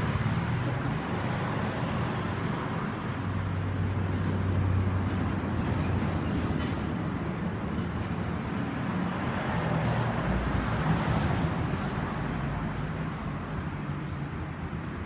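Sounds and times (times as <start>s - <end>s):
road noise: 0.0s - 15.0s.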